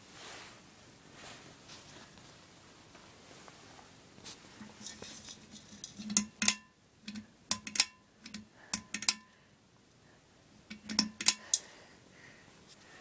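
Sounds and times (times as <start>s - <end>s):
sharp metallic clicks and rattles: 4.6s - 9.4s, 10.7s - 11.6s.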